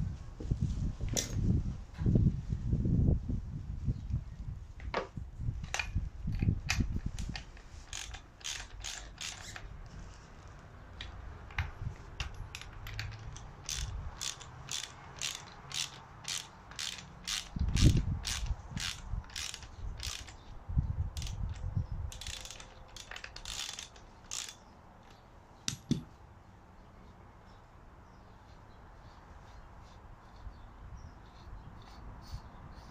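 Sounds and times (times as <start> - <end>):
hand ratchet clicking: 5.7 - 9.7, 11.5 - 20.4, 21.2 - 24.6.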